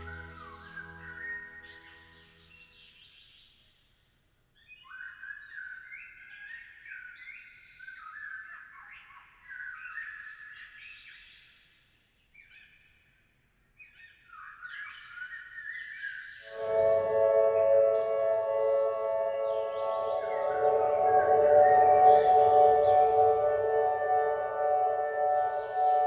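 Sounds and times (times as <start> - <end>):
birds chirping: 0.0 - 3.2, 14.3 - 26.0.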